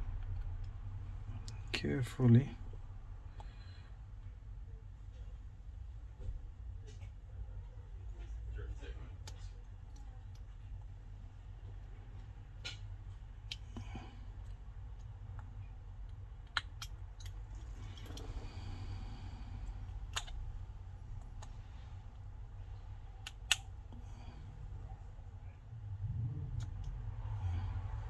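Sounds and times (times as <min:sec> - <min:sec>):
low steady hum: 0:00.0 - 0:28.0
small sharp clicks: 0:20.0 - 0:20.4.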